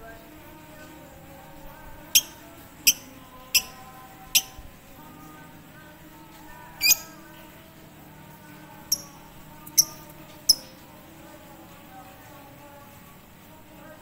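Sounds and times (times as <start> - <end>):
faint background birdsong: 0.0 - 13.9
lovebird chirping: 2.2 - 4.6, 6.8 - 7.2, 8.9 - 10.7.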